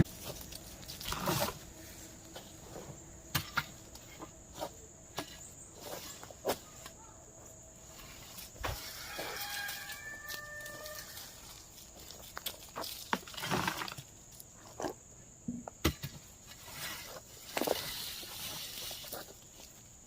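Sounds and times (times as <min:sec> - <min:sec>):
chicken calling: 0:08.7 - 0:11.6.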